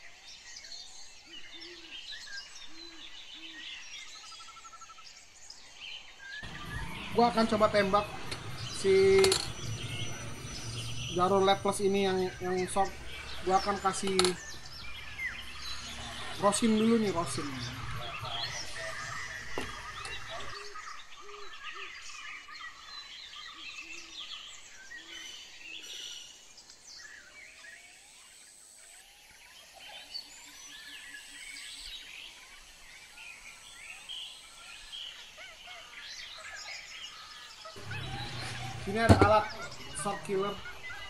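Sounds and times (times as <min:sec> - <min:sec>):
birds chirping and calling: 0:00.0 - 0:28.0, 0:28.8 - 0:41.0
low hum: 0:06.4 - 0:20.6.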